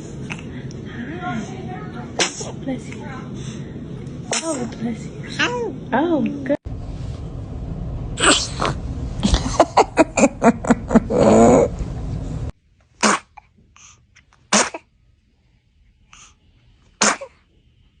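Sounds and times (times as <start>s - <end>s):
baby sneezing: 2.2s - 2.6s, 4.3s - 4.7s, 8.2s - 8.7s, 13.0s - 13.4s, 14.5s - 14.9s, 17.0s - 17.4s.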